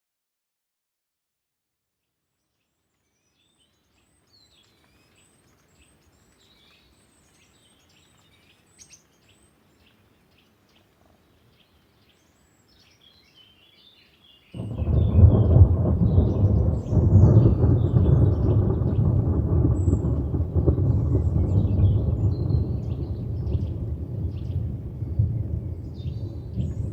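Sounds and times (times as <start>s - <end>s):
light rain hiss: 2.7s - 26.9s
birds chirping: 2.9s - 26.9s
thunder rumbling: 14.6s - 26.9s.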